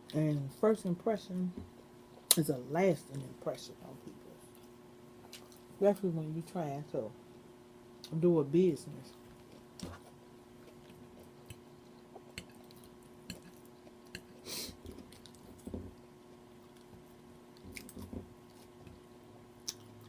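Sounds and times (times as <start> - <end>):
faint steady hum: 0.0 - 20.0
soft crunches and mouth clicks: 4.5 - 5.7, 9.1 - 16.0, 16.6 - 20.0
person chewing food: 9.1 - 20.0.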